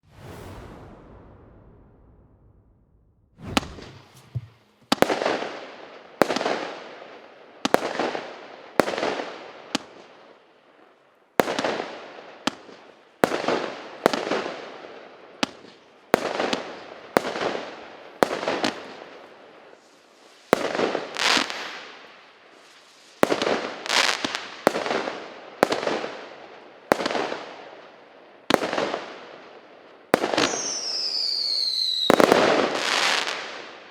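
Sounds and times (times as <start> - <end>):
fireworks bangs: 0.0 - 6.7, 30.1 - 33.8
falling firework whistle: 30.4 - 33.4.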